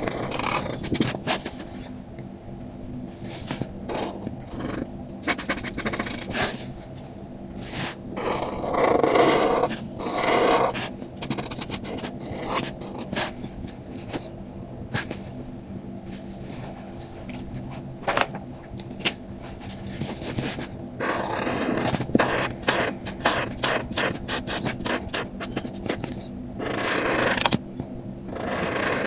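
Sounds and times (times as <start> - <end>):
faint low hum: 0.0 - 29.0
pen scratching on paper: 3.3 - 6.7, 7.6 - 13.4, 20.0 - 27.6, 28.3 - 29.0
small clicks taps and scratches: 11.2 - 14.3, 21.8 - 26.3, 27.3 - 27.9.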